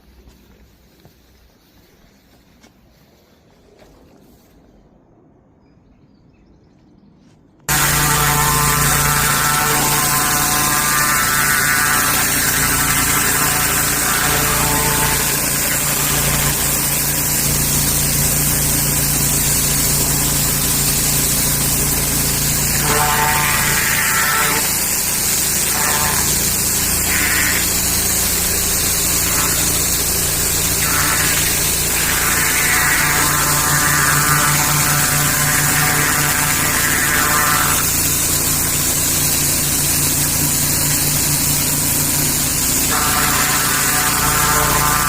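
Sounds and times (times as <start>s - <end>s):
pressure washer motor hum: 7.7s - 45.0s
water spraying onto paving: 7.7s - 45.0s.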